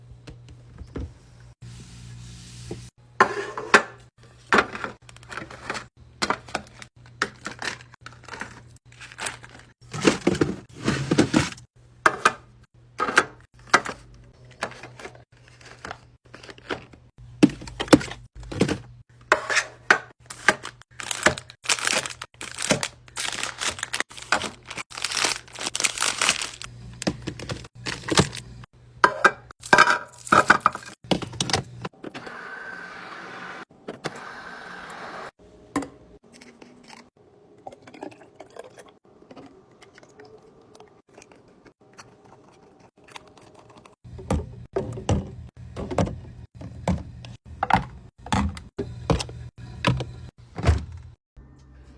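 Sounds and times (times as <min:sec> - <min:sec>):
plastic packaging crinkling: 0:07.4 - 0:10.3, 0:20.2 - 0:28.6
containers clacking when set down: 0:15.7 - 0:31.7.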